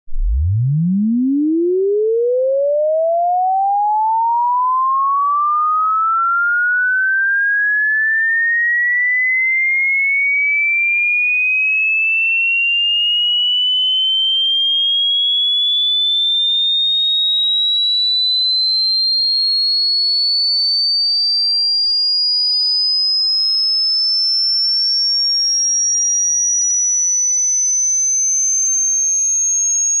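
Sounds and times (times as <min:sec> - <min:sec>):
electronic sine-wave sweep rising: 0:00.1 - 0:08.4, 0:12.9 - 0:21.0.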